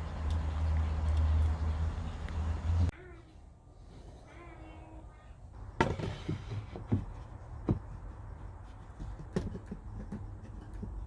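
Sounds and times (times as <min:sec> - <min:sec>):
hard objects knocking and clunking: 0:05.6 - 0:11.0.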